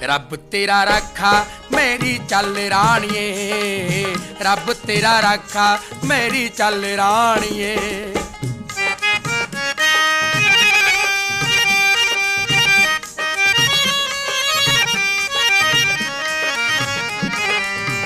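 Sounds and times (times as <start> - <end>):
steady drum beat: 0.8 - 18.0.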